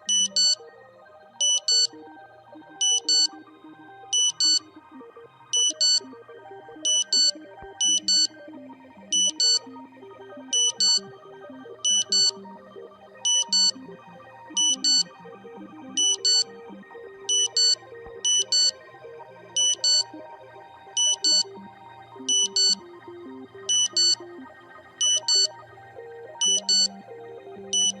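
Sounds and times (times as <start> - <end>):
synthesized background music: 0.0 - 28.0
high-pitched alarm beeps: 1.4 - 1.9, 4.2 - 4.6, 5.6 - 6.0, 7.9 - 8.3, 9.2 - 9.6, 10.6 - 11.0, 11.9 - 12.3, 13.3 - 13.7, 16.0 - 16.4, 17.3 - 18.7, 19.6 - 20.0, 21.0 - 21.4, 22.3 - 22.8, 23.7 - 24.2, 25.0 - 25.5, 26.4 - 26.9, 27.8 - 28.0.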